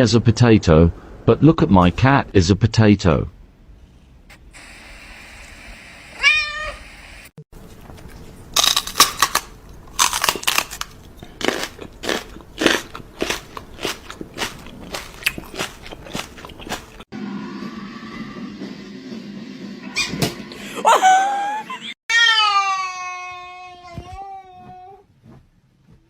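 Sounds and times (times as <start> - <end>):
cat meowing: 6.2 - 6.8
irregular crunching: 7.6 - 17.1.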